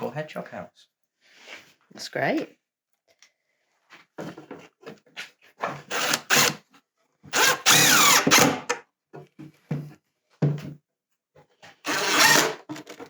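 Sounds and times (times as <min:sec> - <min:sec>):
power drill driving screws: 0:05.8 - 0:06.6, 0:07.3 - 0:08.8, 0:11.8 - 0:12.7.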